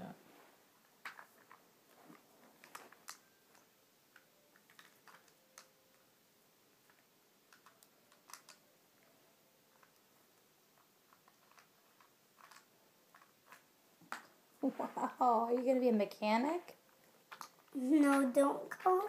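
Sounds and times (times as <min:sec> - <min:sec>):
plastic toy parts clicking: 0:02.6 - 0:05.7, 0:06.9 - 0:08.6, 0:10.8 - 0:13.6, 0:17.3 - 0:18.2.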